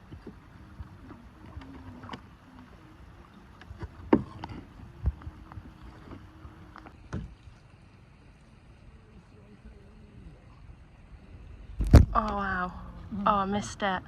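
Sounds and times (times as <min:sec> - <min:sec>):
paddle splashing in water: 0:00.0 - 0:08.1.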